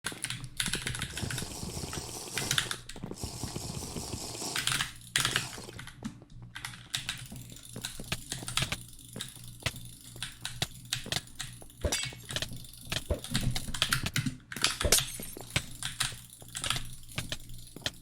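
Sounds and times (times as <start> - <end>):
sharp clicks and taps: 4.6 - 18.0.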